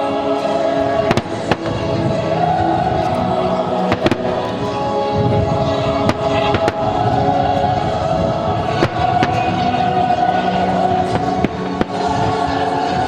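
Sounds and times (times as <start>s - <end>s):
music with long held tones: 0.0s - 13.0s
fireworks bangs: 1.0s - 2.1s, 3.9s - 4.6s, 6.0s - 7.1s, 8.6s - 9.9s.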